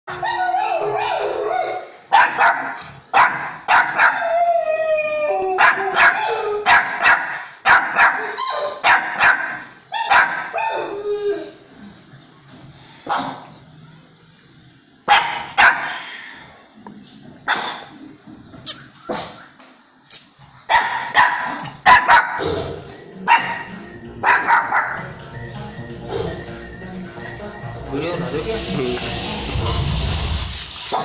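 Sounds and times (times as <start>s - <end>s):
dog barking: 0.8s - 4.2s, 5.6s - 10.8s, 13.0s - 13.5s, 15.1s - 16.0s, 17.5s - 18.0s, 20.7s - 25.1s
dog howling: 3.9s - 6.8s.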